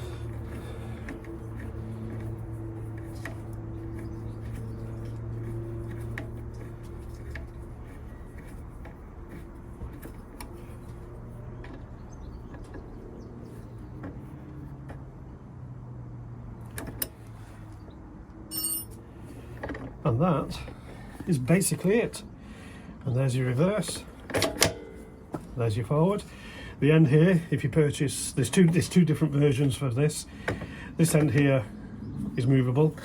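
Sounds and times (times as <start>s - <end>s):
steady low hum: 0.0s - 11.6s
tools and metal parts clicking: 18.5s - 19.0s.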